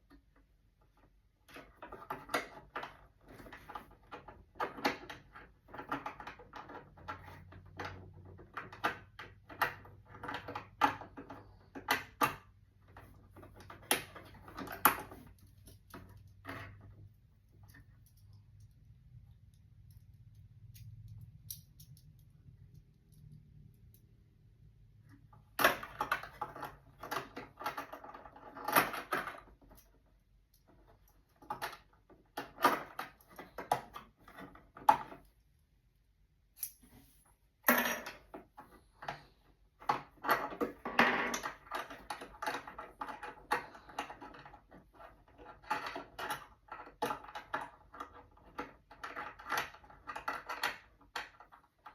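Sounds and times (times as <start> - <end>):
small metallic clicks and rattles: 0.0 - 24.3, 37.6 - 51.9
low steady hum: 12.8 - 27.8.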